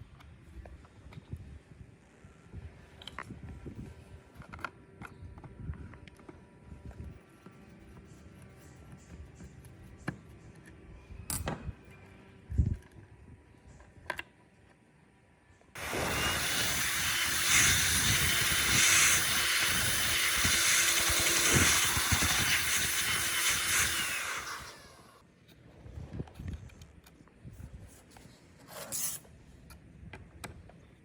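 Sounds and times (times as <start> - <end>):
electric blower rushing air: 15.8 - 25.2.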